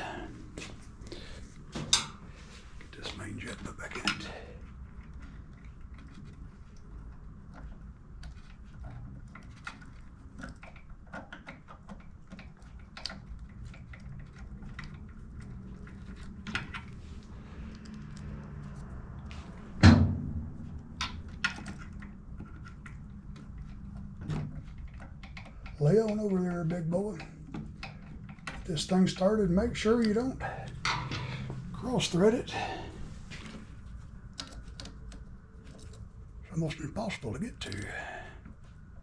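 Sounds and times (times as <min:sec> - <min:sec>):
low steady hum: 0:00.0 - 0:39.0
loud knock: 0:19.8 - 0:20.6.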